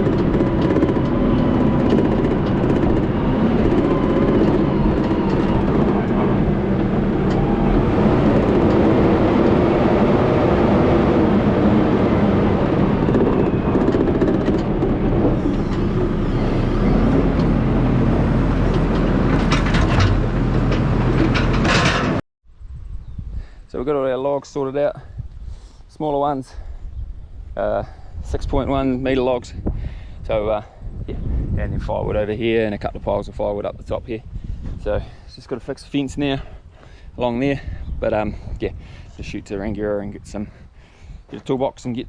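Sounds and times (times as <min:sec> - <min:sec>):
knocks and clanks: 0:00.0 - 0:09.8, 0:12.9 - 0:22.2
diesel engine running: 0:00.0 - 0:22.2.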